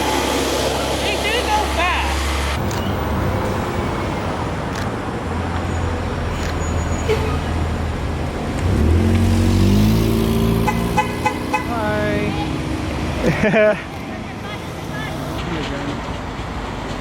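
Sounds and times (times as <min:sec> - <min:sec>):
road traffic engine hum: 0:00.0 - 0:17.0
vehicle engine speeding up: 0:08.4 - 0:13.2.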